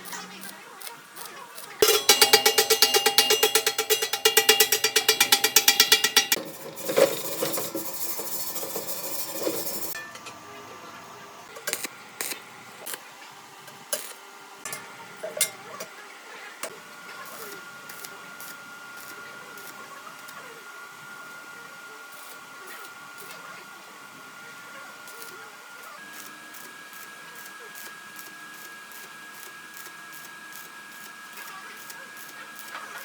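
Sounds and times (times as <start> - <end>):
metal striking steel: 1.8 - 10.3.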